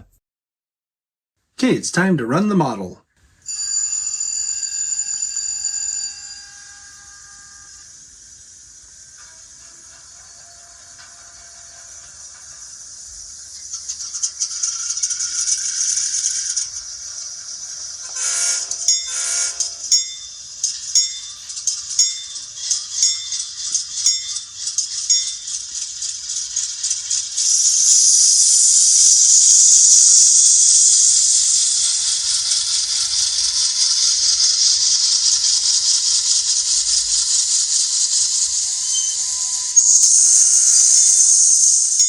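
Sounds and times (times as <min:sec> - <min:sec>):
model train bell ringing: 0:03.4 - 0:29.0, 0:30.8 - 0:42.0
model train horn blasts: 0:06.1 - 0:08.0, 0:18.0 - 0:19.9
steady air hiss: 0:06.4 - 0:42.0.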